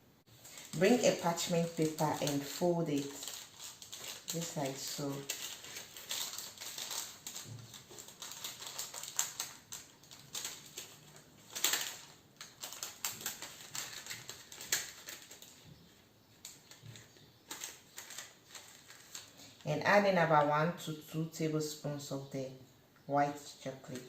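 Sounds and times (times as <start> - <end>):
paper folded and creased: 0.4 - 15.7, 16.4 - 19.6.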